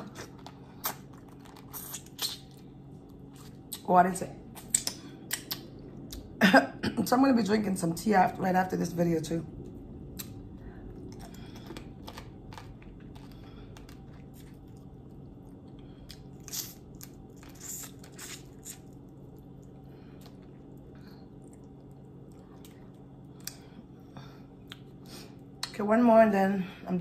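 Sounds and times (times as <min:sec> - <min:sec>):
chewing: 0:00.0 - 0:03.8, 0:10.1 - 0:23.7
steady low hum: 0:00.0 - 0:27.0.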